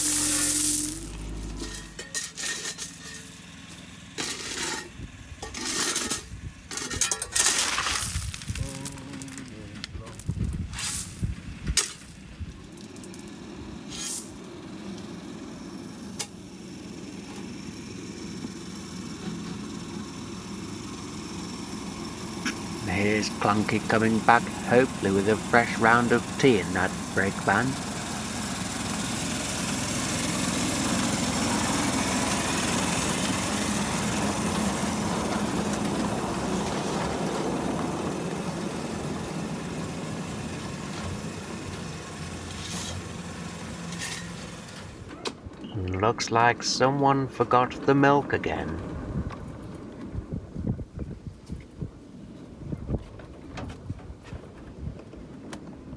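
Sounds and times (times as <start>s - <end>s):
brief hiss: 0.0s - 1.8s
small engine running: 0.0s - 45.9s.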